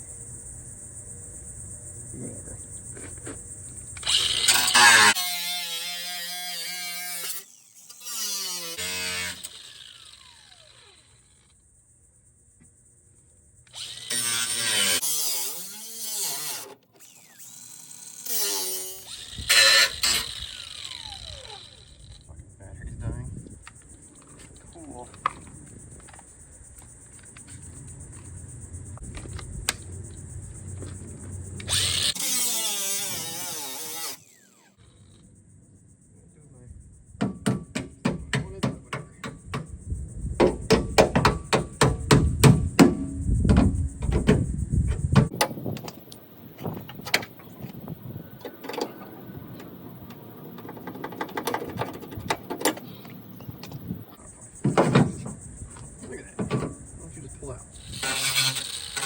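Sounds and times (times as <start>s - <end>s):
small electric power tool whirring: 3.9s - 11.6s, 13.7s - 22.2s, 31.6s - 35.2s, 45.2s - 54.1s, 57.8s - 59.0s
hammer knocking on sheet metal: 37.2s - 39.7s.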